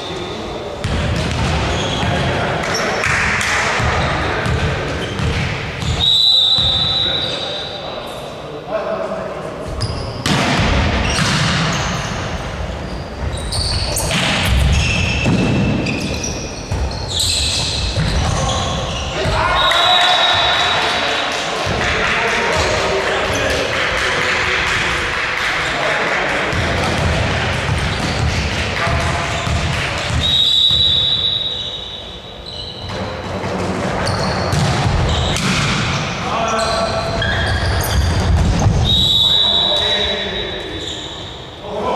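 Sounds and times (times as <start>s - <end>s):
shoes squeaking on court floor: 0.0s - 3.2s, 3.8s - 8.4s, 9.6s - 10.3s, 11.0s - 21.0s, 26.5s - 41.6s.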